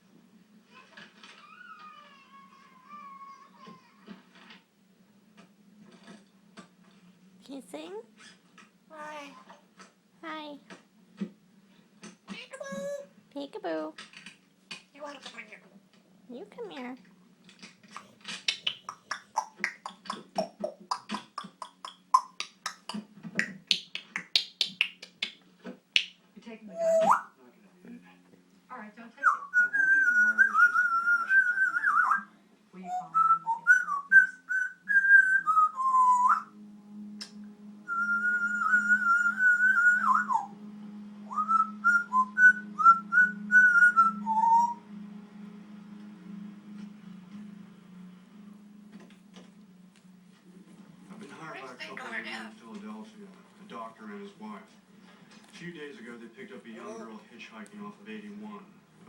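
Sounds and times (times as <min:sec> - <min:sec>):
parrot whistling: 0:12.6 - 0:13.1, 0:18.0 - 0:22.8, 0:26.7 - 0:27.4, 0:29.2 - 0:36.6, 0:37.2 - 0:40.6, 0:41.3 - 0:45.0
parrot clicking and chirping: 0:17.6 - 0:25.4
steady low hum: 0:25.8 - 0:59.0.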